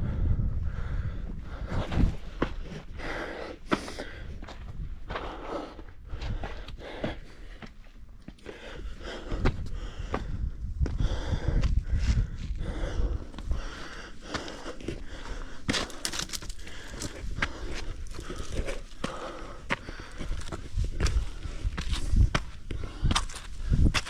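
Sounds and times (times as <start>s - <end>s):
heavy breathing: 0.0s - 23.9s
footsteps on loose stone: 14.3s - 24.0s.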